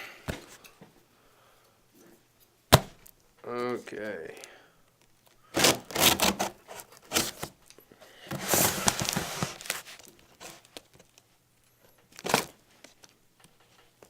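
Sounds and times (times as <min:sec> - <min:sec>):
sharp knocks on cardboard box: 0:02.7 - 0:03.0
tape and cardboard tearing: 0:05.5 - 0:07.6, 0:08.3 - 0:10.8, 0:12.2 - 0:12.6.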